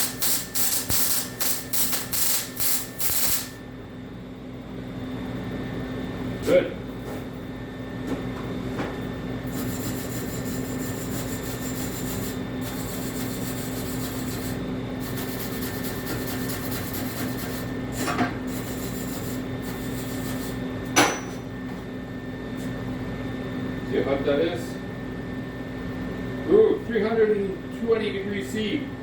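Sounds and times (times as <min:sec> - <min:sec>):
welder hum: 0:00.0 - 0:03.6, 0:09.4 - 0:21.3
welding crackling hiss: 0:00.0 - 0:03.6, 0:09.5 - 0:17.7, 0:18.5 - 0:20.6.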